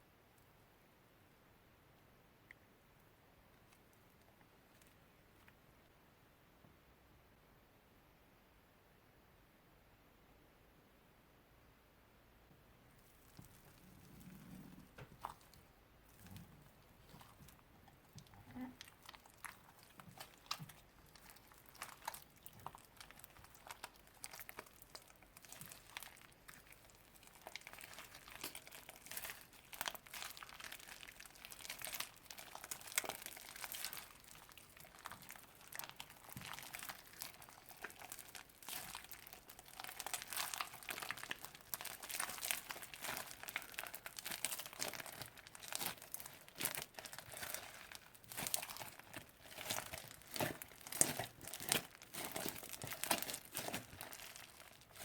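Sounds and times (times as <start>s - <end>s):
slime crinkling and crunching: 13.0s - 55.0s
small clicks and crackles: 13.0s - 55.0s.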